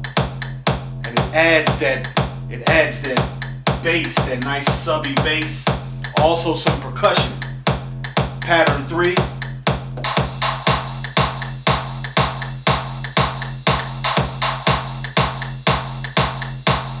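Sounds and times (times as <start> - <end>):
four-on-the-floor kick drum: 0.0 - 17.0
percussion: 0.0 - 17.0
sub bass: 0.0 - 17.0.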